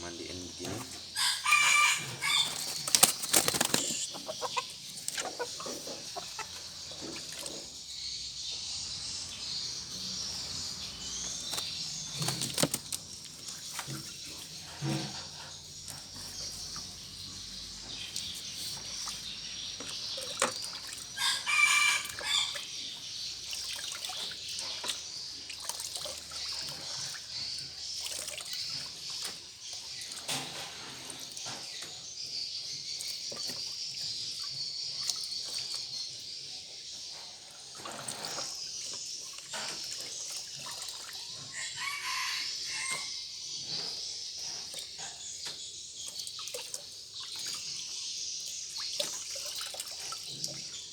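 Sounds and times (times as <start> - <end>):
water trickling and splashing: 0.0 - 50.9
rooster crowing: 1.2 - 2.6, 21.2 - 22.6, 41.5 - 43.2.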